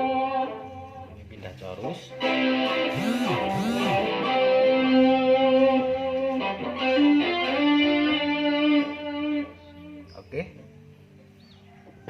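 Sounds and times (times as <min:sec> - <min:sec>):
electric guitar with chorus effect: 0:02.1 - 0:10.1.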